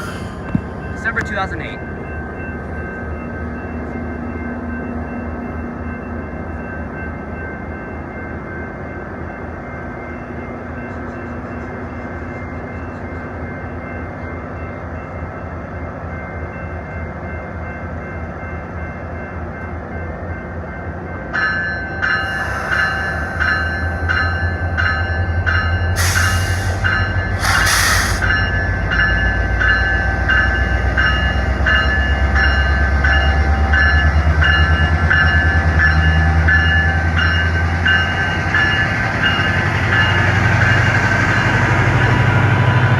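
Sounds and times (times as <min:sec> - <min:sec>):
diesel locomotive rumble: 0:00.0 - 0:06.6, 0:21.7 - 0:42.9
train bell ringing: 0:00.0 - 0:42.9.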